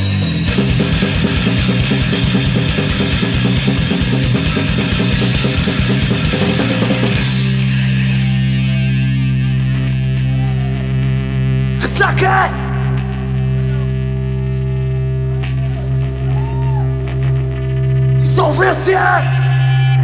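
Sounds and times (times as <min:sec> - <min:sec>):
held guitar and bass chord: 0:00.0 - 0:20.0
rock band playing: 0:00.0 - 0:20.0
drum kit fast beat: 0:00.1 - 0:08.1.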